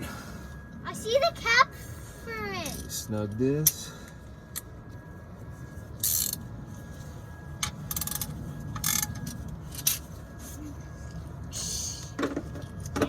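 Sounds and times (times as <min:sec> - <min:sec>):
ratchet wrench clicking: 0:06.0 - 0:06.4.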